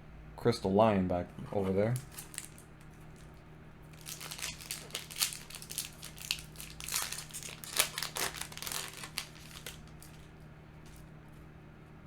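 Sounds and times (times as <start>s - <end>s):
foil wrapper crinkling and tearing: 1.6s - 11.1s.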